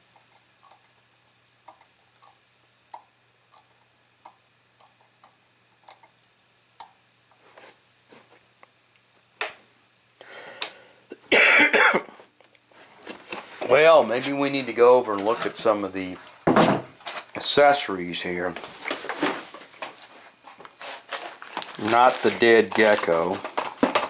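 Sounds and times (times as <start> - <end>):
faint ticking: 0.1 - 1.0, 1.6 - 6.2
person coughing: 11.1 - 12.2.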